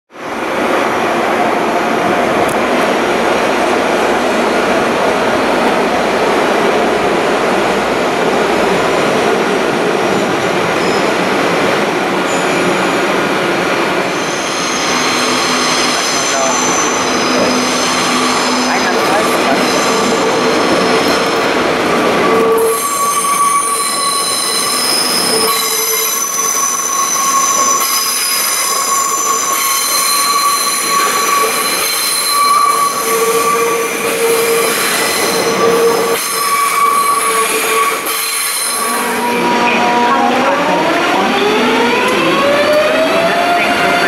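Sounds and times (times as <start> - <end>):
train wheels squealing on rails: 10.7 - 11.5, 12.2 - 13.3, 14.0 - 40.2.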